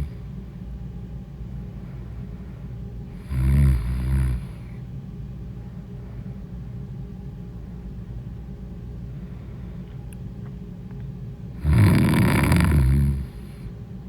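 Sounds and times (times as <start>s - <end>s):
woman snoring: 3.2s - 4.7s, 11.6s - 13.6s.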